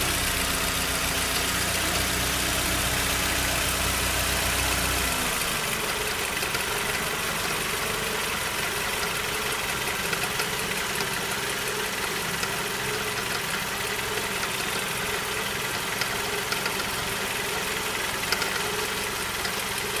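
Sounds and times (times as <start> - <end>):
car engine idling: 0.0 - 20.0
sharp engine ticks: 9.0 - 20.0.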